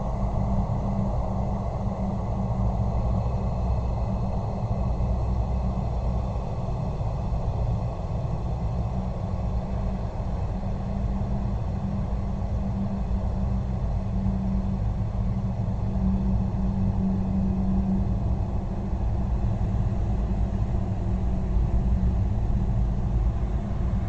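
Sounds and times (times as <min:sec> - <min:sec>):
low rumbling drone: 0:11.4 - 0:24.0.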